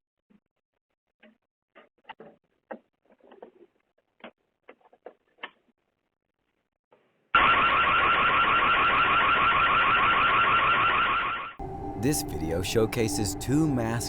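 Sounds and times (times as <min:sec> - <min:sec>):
warbling electronic alarm siren: 0:07.4 - 0:14.0.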